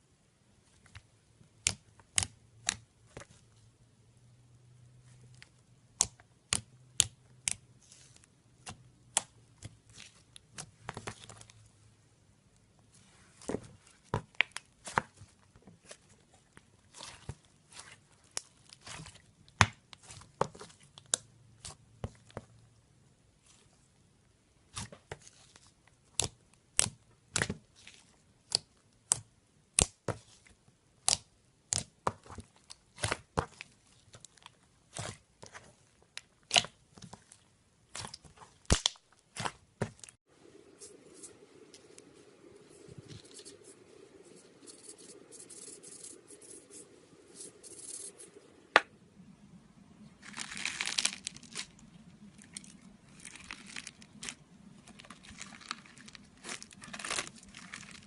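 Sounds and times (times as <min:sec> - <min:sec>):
slime popping and crackling: 0:37.9 - 0:40.2, 0:50.2 - 0:58.0.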